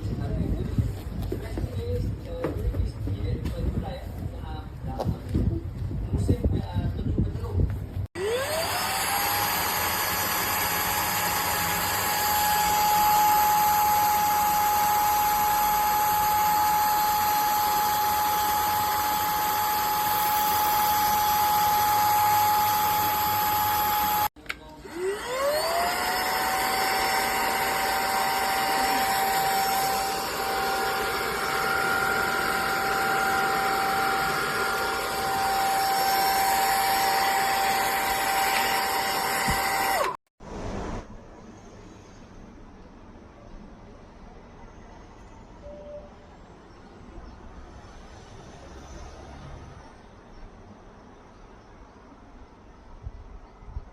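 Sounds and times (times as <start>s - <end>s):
vacuum motor whine: 8.2s - 40.2s.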